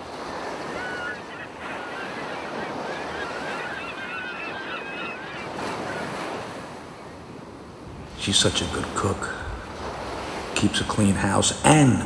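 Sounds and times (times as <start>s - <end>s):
birds chirping: 0.5s - 6.2s, 7.9s - 12.0s
surf washing on beach: 7.6s - 12.0s.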